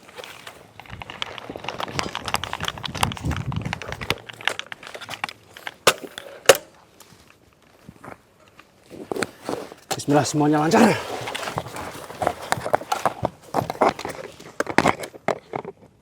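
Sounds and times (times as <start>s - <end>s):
footsteps through dry brush: 6.7s - 14.6s.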